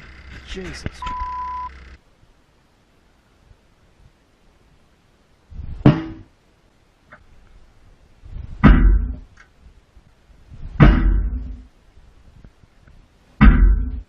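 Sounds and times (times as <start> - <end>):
heavy thumps with low rumble: 5.6 - 6.3, 8.3 - 9.3, 10.6 - 11.7, 13.4 - 14.0.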